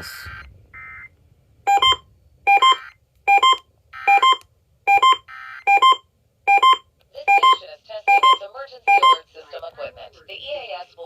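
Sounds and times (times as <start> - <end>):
electronic alert beeping: 1.7 - 9.2.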